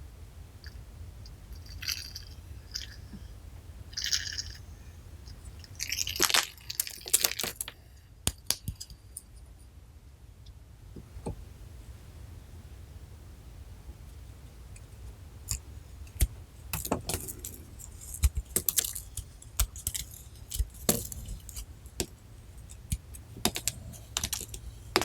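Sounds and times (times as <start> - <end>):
small hard objects clicking: 5.6 - 8.9, 16.8 - 22.1, 22.8 - 25.0.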